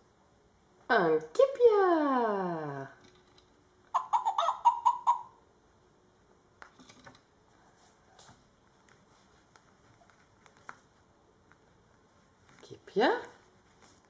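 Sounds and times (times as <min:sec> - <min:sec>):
recorded chicken clucking from speaker: 0:03.9 - 0:05.4
hands handling book and toys: 0:06.6 - 0:14.0.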